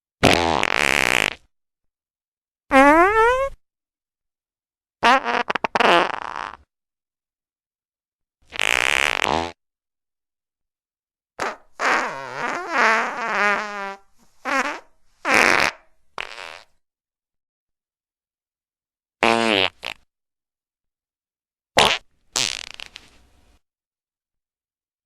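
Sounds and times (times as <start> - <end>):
fart sound effects: 0.2 - 1.5, 2.7 - 3.6, 5.0 - 6.7, 8.5 - 9.6, 11.4 - 16.8, 19.2 - 20.1, 21.8 - 23.2.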